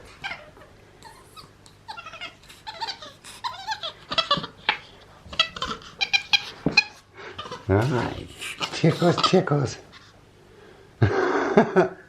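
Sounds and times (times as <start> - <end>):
monkey squeaking and chirping: 5.4 - 7.6.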